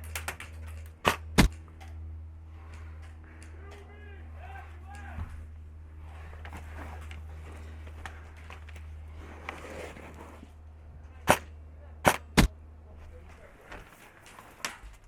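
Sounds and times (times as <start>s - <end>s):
airsoft gun shots: 1.0s - 1.6s, 11.2s - 12.6s.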